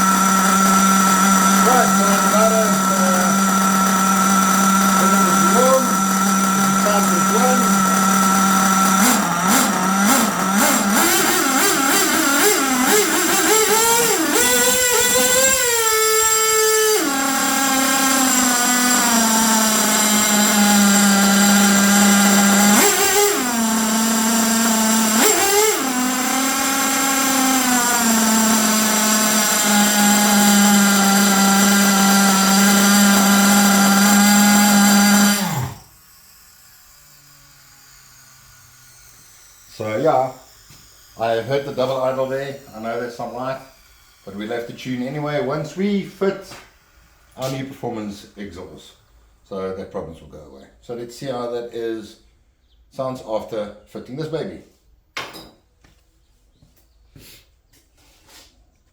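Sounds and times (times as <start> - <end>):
small model engine running: 0.0 - 49.8.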